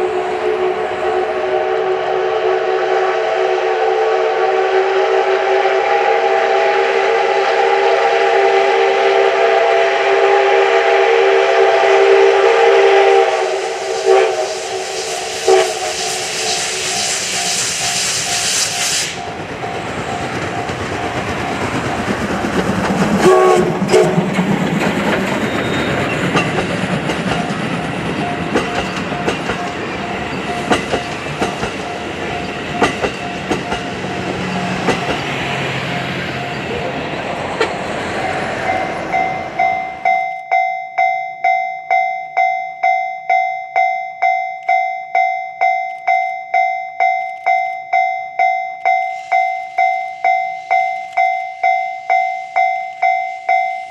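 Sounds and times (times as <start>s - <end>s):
steam train rumbling and hissing: 0.0s - 40.2s, 48.9s - 52.8s
wheels clicking over rail joints: 19.3s - 36.6s
level-crossing bell ringing: 31.8s - 34.9s, 35.7s - 37.0s, 38.2s - 53.9s.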